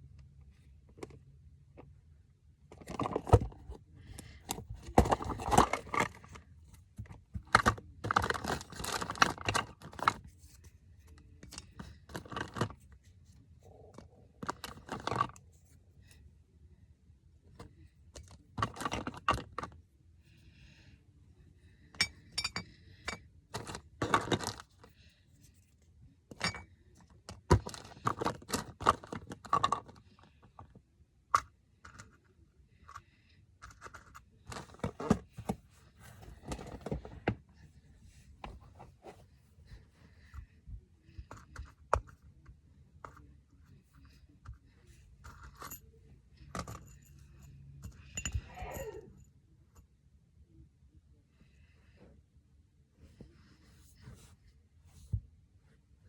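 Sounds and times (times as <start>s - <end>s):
plastic container clicking and scraping: 2.7s - 6.4s, 7.0s - 10.3s, 11.4s - 12.9s, 18.2s - 19.8s, 23.6s - 24.8s, 33.6s - 37.4s.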